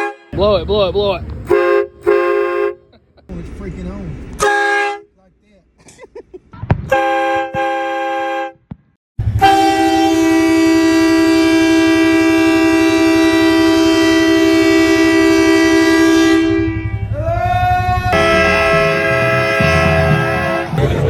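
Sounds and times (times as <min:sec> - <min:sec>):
train horn blasts: 0:00.0 - 0:00.4, 0:01.5 - 0:02.9, 0:04.4 - 0:05.1, 0:06.9 - 0:08.6, 0:09.3 - 0:17.2, 0:18.1 - 0:21.0.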